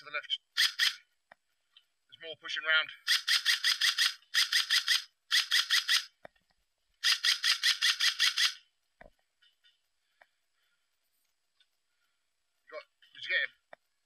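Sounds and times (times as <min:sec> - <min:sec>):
airsoft gun full-auto bursts: 0:00.6 - 0:01.0, 0:03.1 - 0:06.1, 0:07.0 - 0:08.6.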